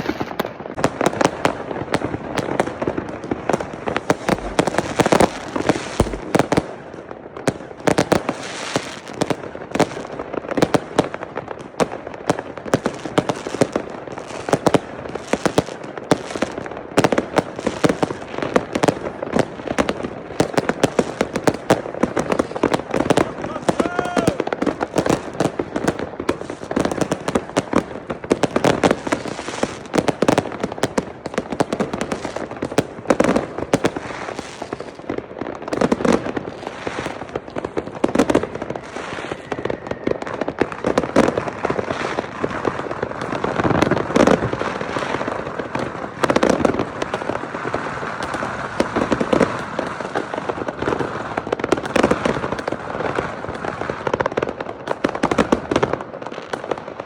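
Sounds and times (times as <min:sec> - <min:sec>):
fireworks bangs and crackling: 0:00.0 - 0:57.0.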